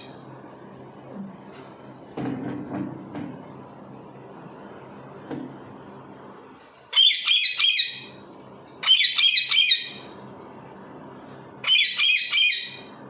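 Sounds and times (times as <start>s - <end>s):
parrot calling: 6.9s - 8.2s, 8.8s - 10.1s, 11.6s - 12.9s.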